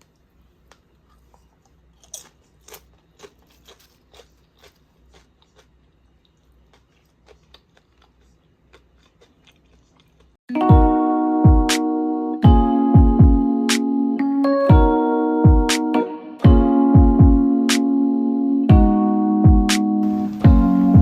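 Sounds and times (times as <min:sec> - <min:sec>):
faint low hum: 0:00.0 - 0:10.4
crisp crunches and clicks: 0:00.6 - 0:10.4.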